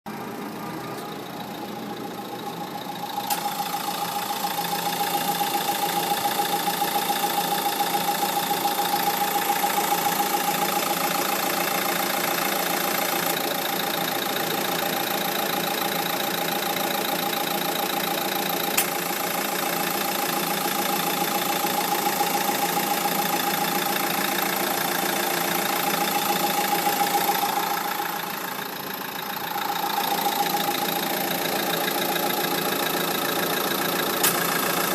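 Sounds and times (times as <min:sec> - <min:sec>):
car engine idling: 0:00.1 - 0:34.9
steady whine: 0:00.2 - 0:13.5, 0:18.8 - 0:34.9
sharp click: 0:34.2 - 0:34.5.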